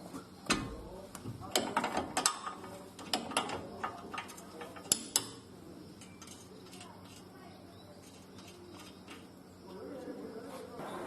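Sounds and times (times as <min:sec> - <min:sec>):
wrench clicking on metal: 0:03.1 - 0:05.4.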